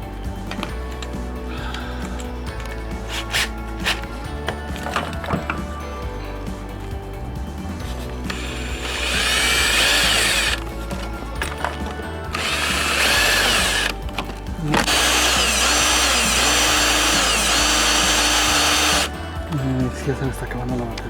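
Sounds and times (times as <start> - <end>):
electric drill boring plastic: 1.5 - 5.6, 8.3 - 19.2.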